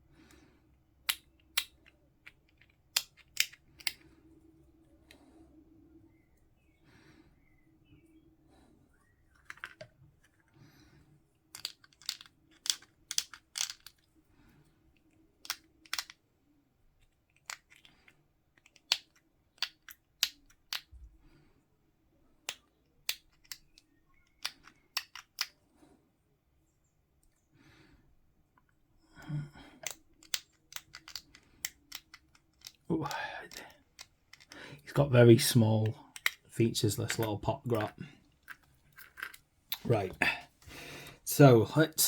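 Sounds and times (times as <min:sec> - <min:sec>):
plastic parts snipped and handled: 0:11.5 - 0:14.1, 0:15.4 - 0:16.2, 0:29.8 - 0:32.9.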